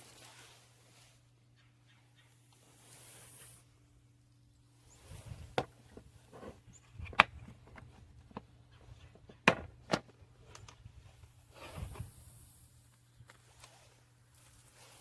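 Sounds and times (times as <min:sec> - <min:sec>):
hard objects clicking and knocking: 0:05.5 - 0:10.7.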